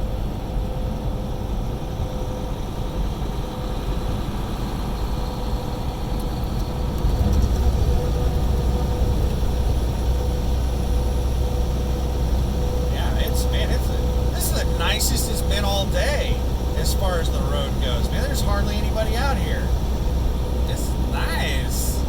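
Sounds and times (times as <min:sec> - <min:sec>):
truck engine and road rumble: 0:00.0 - 0:22.0
faint steady hum: 0:05.6 - 0:22.0.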